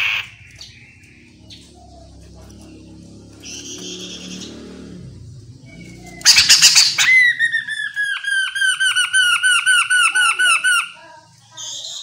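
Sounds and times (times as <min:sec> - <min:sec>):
bird harsh squawk: 0:00.0 - 0:00.8, 0:03.4 - 0:04.8, 0:05.6 - 0:11.0
bird whistled notes: 0:05.6 - 0:10.9.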